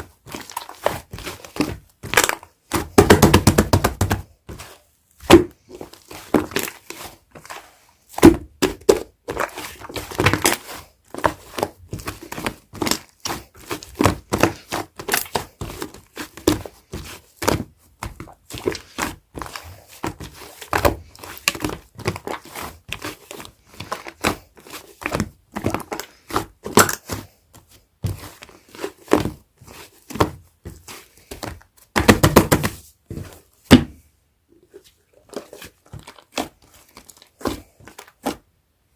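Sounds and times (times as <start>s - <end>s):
slime squished by hand: 35.2s - 38.4s.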